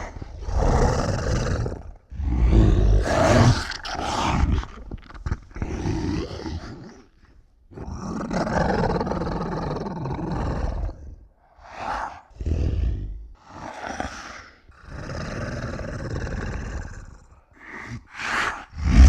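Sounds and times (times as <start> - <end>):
monster roaring: 0.0 - 4.6, 18.7 - 19.0.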